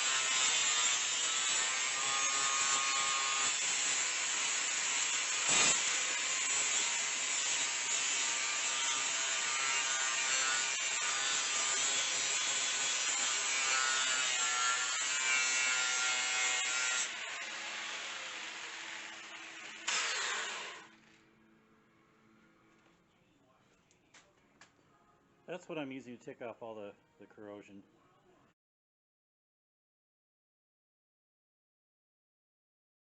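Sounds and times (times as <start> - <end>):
power tool scouring metal: 0.0 - 20.9.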